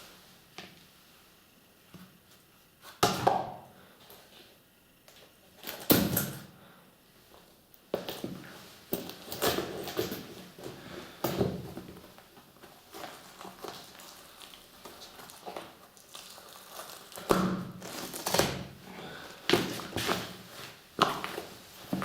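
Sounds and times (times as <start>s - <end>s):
crinkling: 8.0s - 22.0s.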